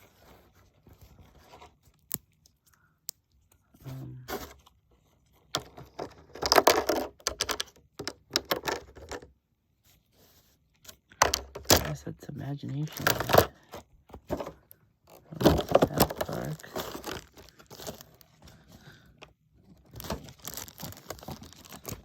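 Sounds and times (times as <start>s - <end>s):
packaging rustling and crackling: 12.8s - 19.0s, 19.6s - 22.0s.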